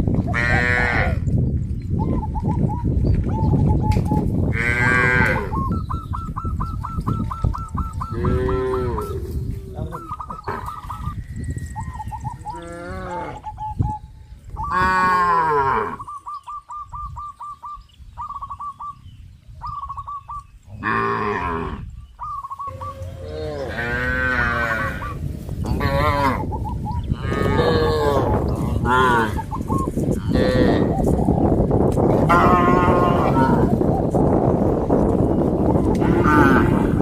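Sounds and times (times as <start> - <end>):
cows mooing: 4.5 - 5.6, 8.1 - 9.4, 12.5 - 13.4, 14.7 - 16.1, 20.8 - 21.9, 22.7 - 26.5, 27.1 - 29.5, 30.2 - 30.9, 32.2 - 33.8, 35.9 - 37.0.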